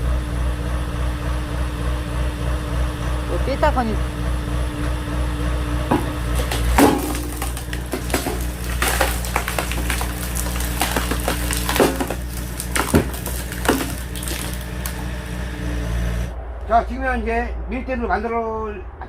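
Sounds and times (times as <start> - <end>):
engine humming: 0.0 - 16.6
wood cracking and splintering: 5.9 - 15.8.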